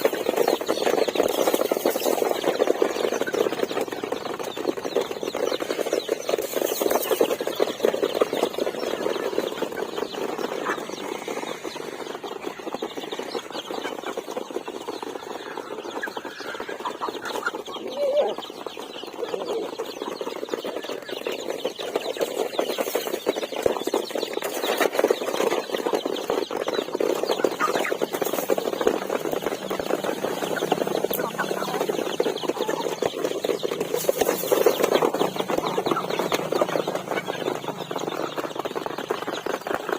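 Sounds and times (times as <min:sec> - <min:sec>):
chickens clucking: 0:00.0 - 0:39.9.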